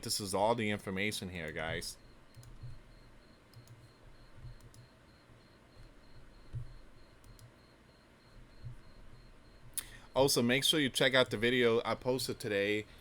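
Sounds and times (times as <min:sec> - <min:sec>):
computer mouse clicks: 0:02.3 - 0:02.8, 0:03.5 - 0:04.9, 0:06.5 - 0:07.6.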